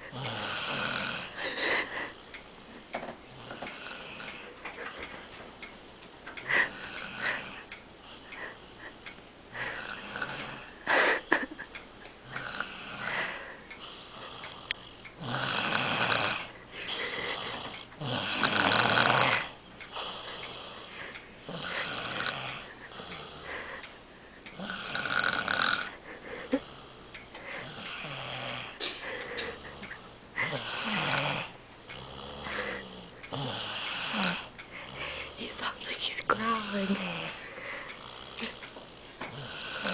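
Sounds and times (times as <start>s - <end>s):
person snoring: 0.0s - 2.2s, 3.3s - 4.5s, 6.5s - 7.6s, 9.6s - 11.0s, 12.2s - 23.8s, 24.6s - 35.5s, 39.3s - 39.9s.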